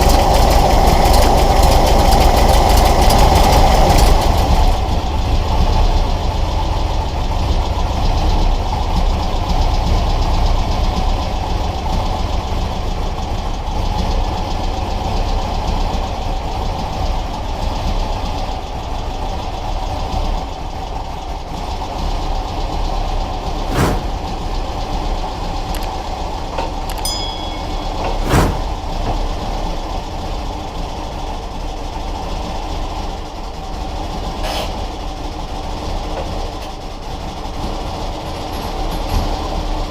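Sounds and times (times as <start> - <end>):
low mechanical drone: 23.6 - 24.8, 27.0 - 29.1.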